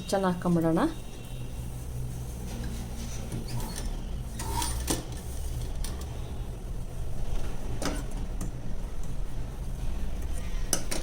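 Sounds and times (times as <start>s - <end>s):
sewing machine running: 3.5s - 4.9s.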